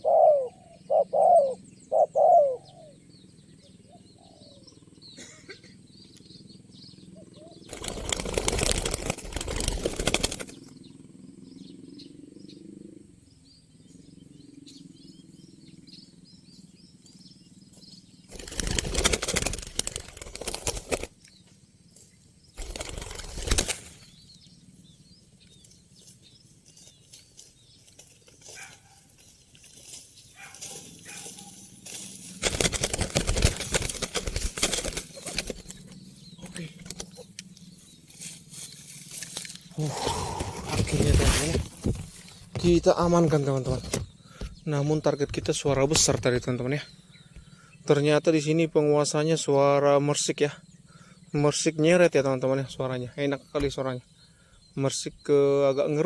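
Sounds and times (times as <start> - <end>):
small birds chirping: 0.0 - 56.0
dove wings flapping: 7.6 - 10.7, 18.3 - 21.2, 22.6 - 24.2, 31.8 - 37.3.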